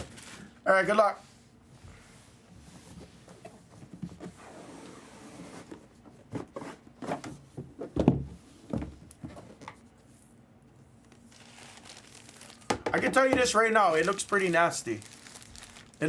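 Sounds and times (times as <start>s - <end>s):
packaging rustling: 11.1s - 16.0s.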